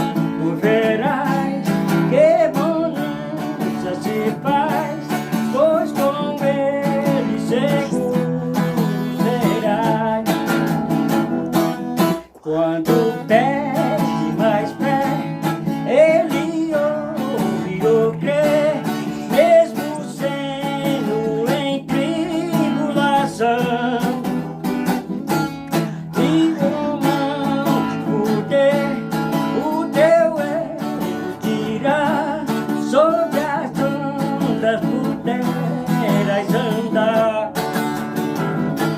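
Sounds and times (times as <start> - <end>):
strummed acoustic guitar: 0.0 - 38.9.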